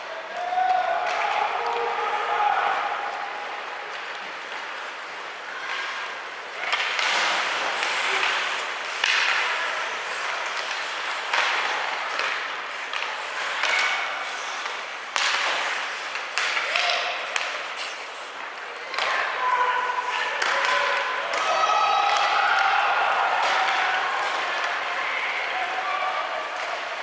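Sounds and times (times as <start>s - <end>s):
skates scraping on ice: 0.4s - 27.0s
stick and puck knocks: 6.6s - 9.8s, 10.4s - 18.0s.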